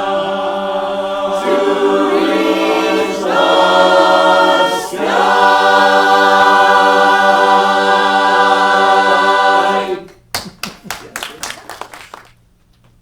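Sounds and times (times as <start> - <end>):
choir holding a sustained chord: 0.0 - 10.1.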